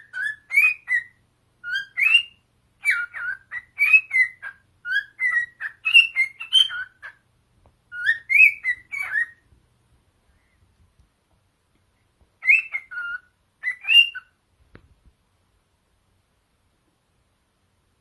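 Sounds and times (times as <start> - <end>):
cockatiel whistling: 0.0 - 7.2, 7.9 - 9.4, 12.4 - 14.3.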